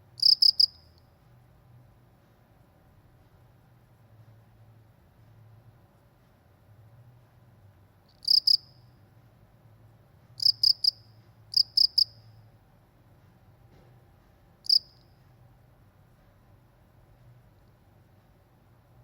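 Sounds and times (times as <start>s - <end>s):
cricket chirping: 0.2s - 1.1s, 8.1s - 8.9s, 10.4s - 12.4s, 14.6s - 15.1s.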